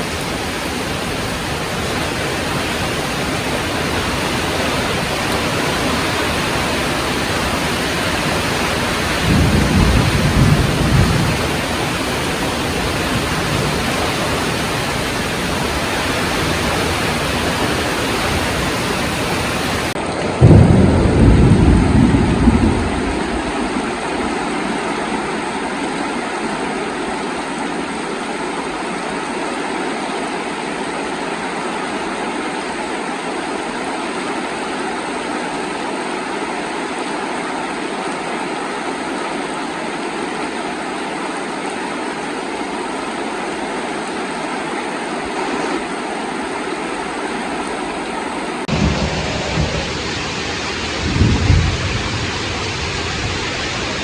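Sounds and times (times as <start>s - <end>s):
heavy rain falling: 0.0s - 54.0s
low rumbles of thunder: 7.2s - 14.0s, 20.2s - 24.5s, 48.7s - 54.0s.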